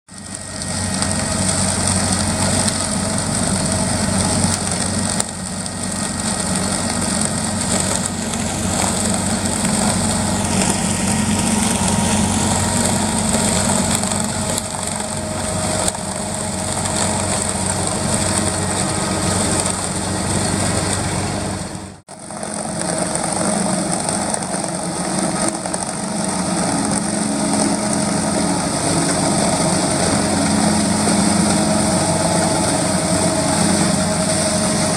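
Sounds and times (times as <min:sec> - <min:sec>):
diesel engines running: 0:00.1 - 0:34.9.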